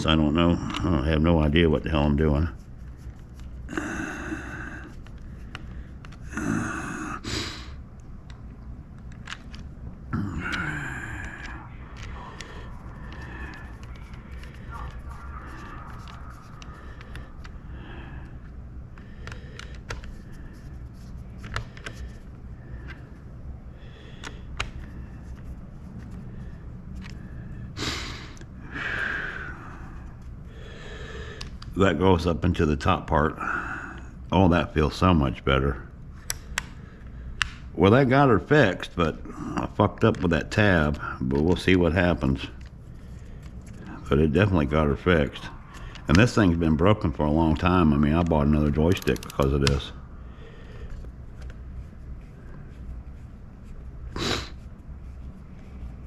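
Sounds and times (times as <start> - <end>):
man breathing hard: 3.4 - 7.8, 10.1 - 31.6, 33.3 - 34.2, 42.8 - 44.1, 45.4 - 46.1, 50.0 - 51.4
man breathing hard and sighing: 3.7 - 7.8, 10.1 - 20.6
man grunting: 6.3 - 7.7, 10.1 - 11.6
plastic parts clicking: 48.9 - 49.8.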